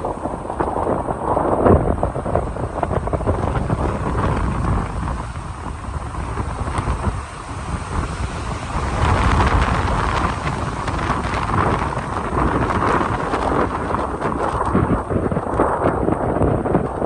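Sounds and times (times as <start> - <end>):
storm wind buffeting microphone: 0.0 - 17.0.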